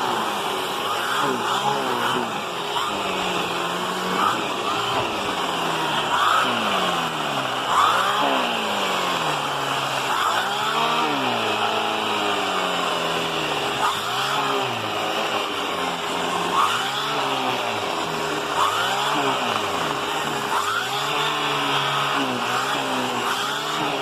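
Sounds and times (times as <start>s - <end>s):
vacuum cleaner with turbo brush: 0.0s - 24.0s.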